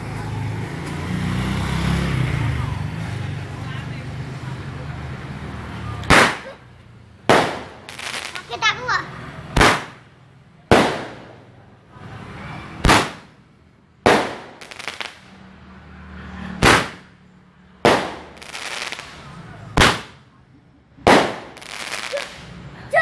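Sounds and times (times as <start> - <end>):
fireworks bangs: 6.0 - 11.6, 12.7 - 13.4, 14.0 - 15.4, 16.5 - 17.2, 17.8 - 20.3, 21.0 - 22.6.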